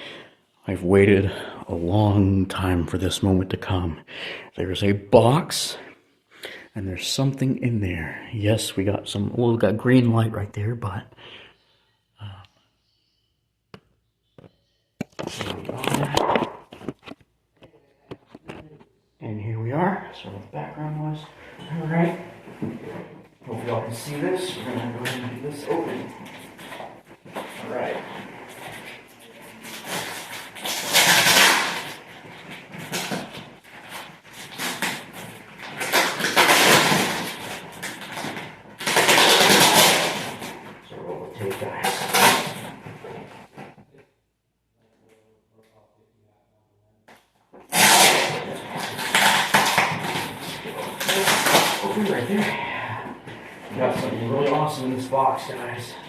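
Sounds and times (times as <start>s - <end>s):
person sighing: 52.3s - 53.3s.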